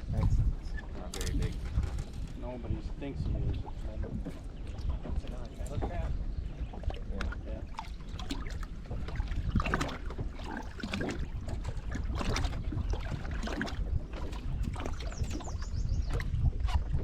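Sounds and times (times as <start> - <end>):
water against boat: 0.0 - 17.0
wind rumbling on microphone: 0.0 - 17.0.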